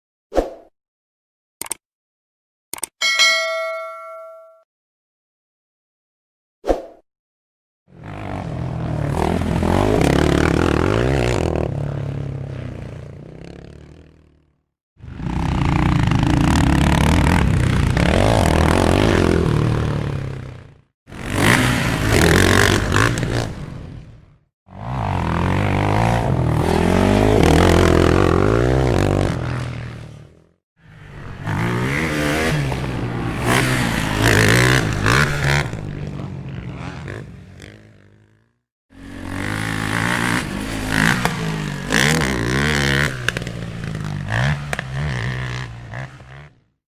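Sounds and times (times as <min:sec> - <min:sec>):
rally vehicles revving past: 0:08.0 - 0:14.0, 0:24.7 - 0:30.2, 0:30.9 - 0:37.8.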